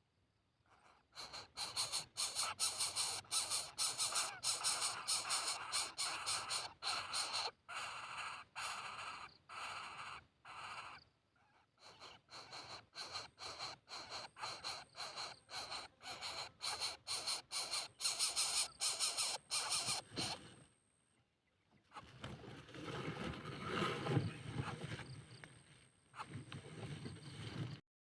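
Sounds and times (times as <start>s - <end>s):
chicks begging with harsh rasps: 0.7s - 20.4s.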